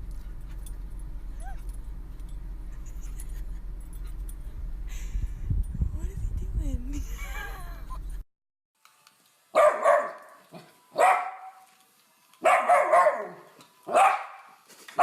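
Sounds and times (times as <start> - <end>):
dog barking: 9.6 - 11.7, 12.4 - 15.0.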